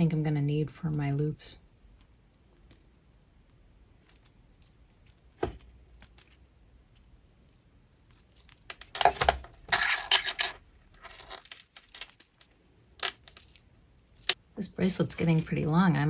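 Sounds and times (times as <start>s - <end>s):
metal parts clicking: 8.1s - 14.4s.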